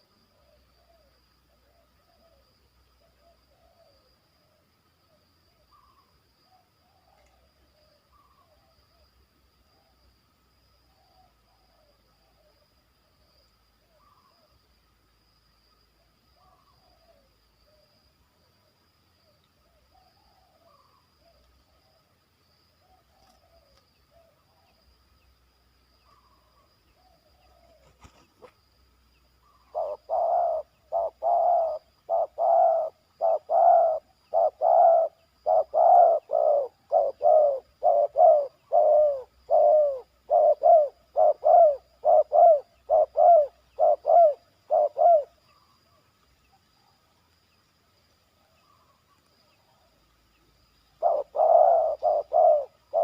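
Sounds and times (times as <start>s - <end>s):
dove cooing: 29.4s - 45.7s, 50.8s - 53.0s.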